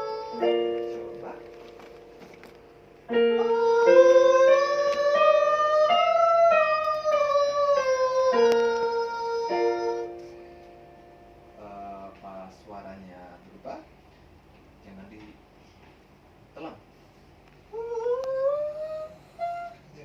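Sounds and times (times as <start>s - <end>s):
person singing vocal exercise: 0.0s - 1.1s, 3.1s - 10.4s, 17.7s - 19.8s
piano chords: 0.0s - 12.8s.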